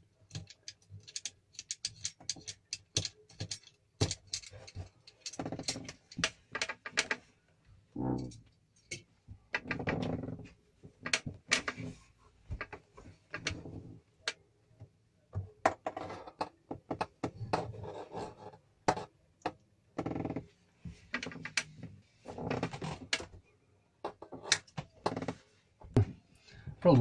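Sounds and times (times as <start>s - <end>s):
clicks and taps of handling tools: 0.0s - 7.3s, 8.4s - 9.8s.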